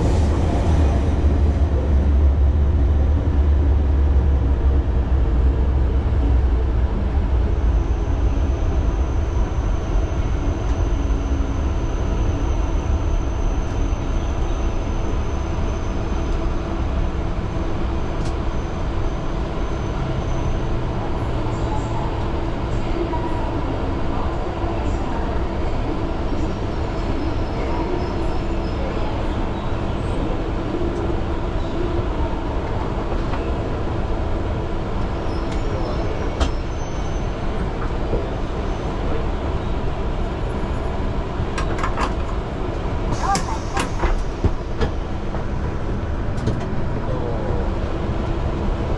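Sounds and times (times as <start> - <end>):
high-speed train rumbling: 0.0 - 48.9.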